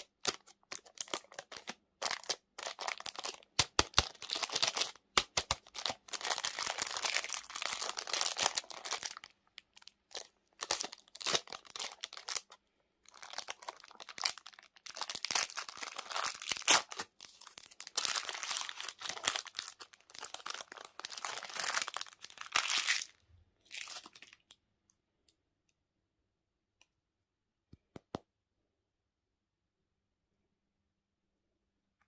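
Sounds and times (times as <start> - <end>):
plastic wrappers crinkling: 0.0 - 24.6.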